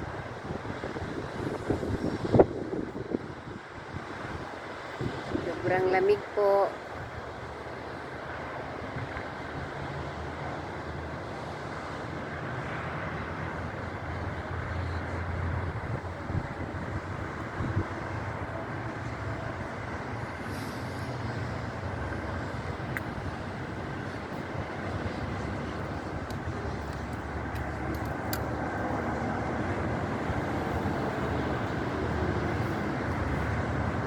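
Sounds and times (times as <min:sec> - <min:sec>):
wind buffeting microphone: 0:00.0 - 0:05.7, 0:15.2 - 0:34.0
highway traffic rumble: 0:00.0 - 0:34.0.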